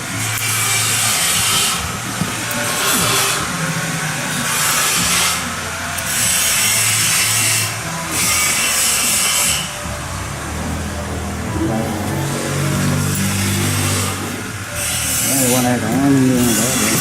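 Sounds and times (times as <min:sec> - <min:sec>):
hand tool rasping: 0:04.5 - 0:17.0
low hum: 0:09.5 - 0:14.8.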